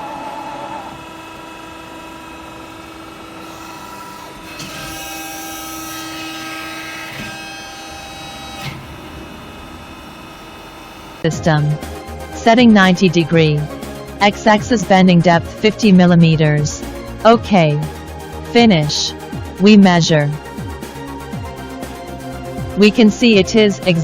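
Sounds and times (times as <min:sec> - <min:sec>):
hydraulic press whining: 0:00.0 - 0:12.5.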